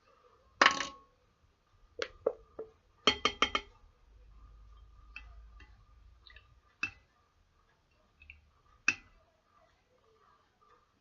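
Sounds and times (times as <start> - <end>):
spoon knocking against a plate: 2.0 - 3.8.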